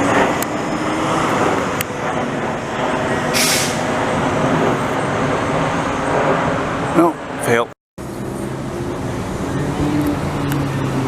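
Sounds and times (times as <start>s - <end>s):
jet engines roaring: 0.0s - 11.0s
short hiss: 3.4s - 3.8s.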